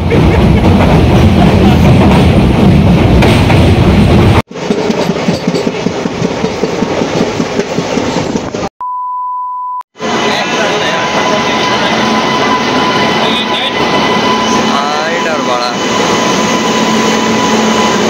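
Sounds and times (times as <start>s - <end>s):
train rumbling on rails: 0.0s - 8.7s, 10.0s - 18.0s
wheels clattering over rail joints: 4.5s - 8.6s
electronic beep: 8.8s - 9.8s.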